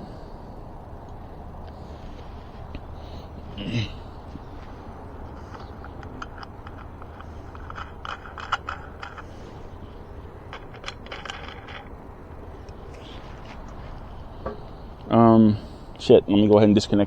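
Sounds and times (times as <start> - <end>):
steady low rumble: 0.0 - 17.0
small metal parts clinking: 4.4 - 14.7.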